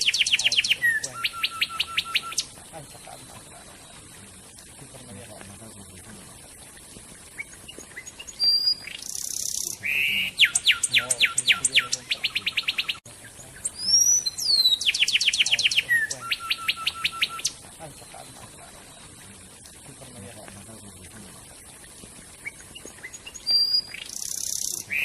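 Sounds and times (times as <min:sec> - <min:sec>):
sweeping whistles: 0:00.0 - 0:04.3, 0:13.6 - 0:19.4
songbird trilling: 0:00.0 - 0:05.3, 0:07.3 - 0:20.4, 0:22.4 - 0:25.0.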